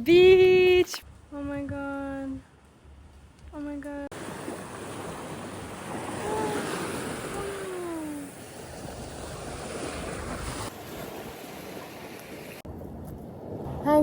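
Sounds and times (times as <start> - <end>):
sea surf washing onto beach: 4.1 - 12.7.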